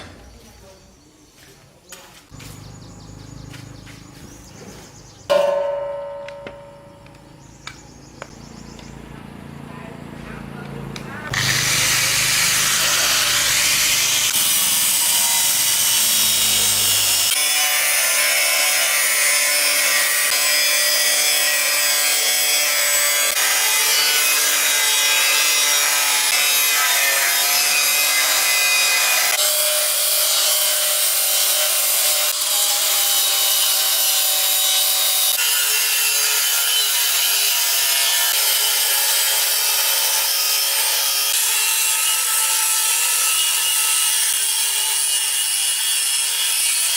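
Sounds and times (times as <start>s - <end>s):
power tool grinding metal: 10.9s - 46.9s.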